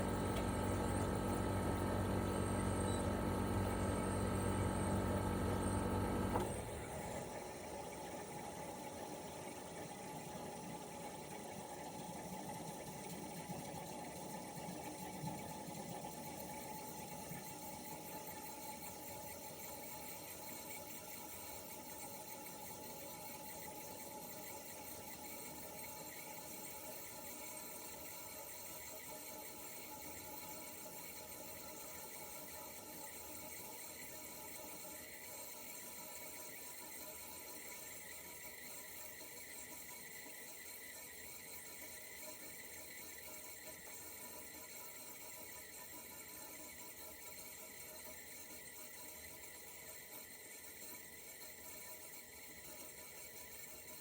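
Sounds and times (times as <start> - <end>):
air conditioner compressor hum: 0.0 - 7.5
quiet steady running sound: 0.0 - 54.0.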